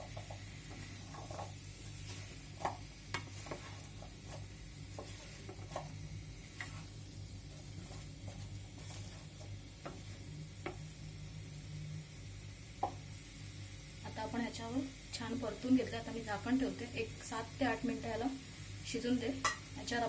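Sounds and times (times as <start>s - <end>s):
spatula scraping and tapping pan: 0.0s - 10.8s
vegetables sizzling in a pan: 0.0s - 20.0s.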